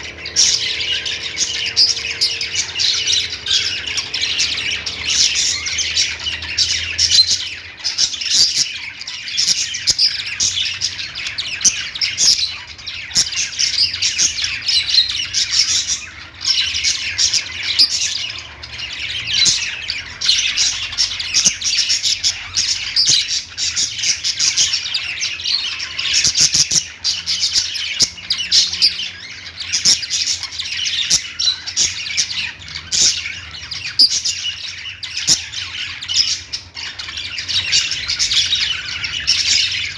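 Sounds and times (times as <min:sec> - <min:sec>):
parrots chirping and squawking: 0:00.0 - 0:39.9.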